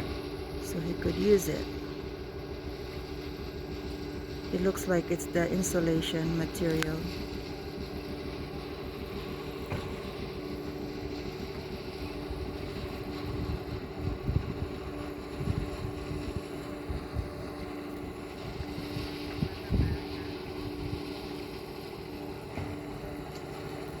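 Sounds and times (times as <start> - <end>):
low motor hum: 0.0 - 24.0
wind gusting on microphone: 12.2 - 21.5.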